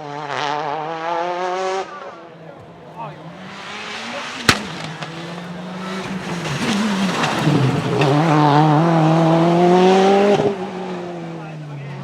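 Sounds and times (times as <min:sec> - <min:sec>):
rally car engine accelerating: 0:00.0 - 0:12.0
sharp exhaust cracks: 0:03.0 - 0:08.4.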